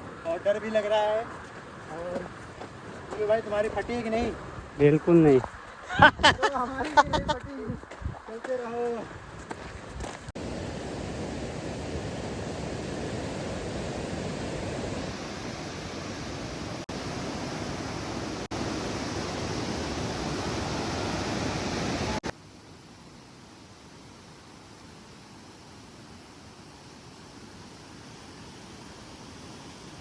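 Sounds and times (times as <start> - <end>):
steady rushing noise: 0.0 - 22.3.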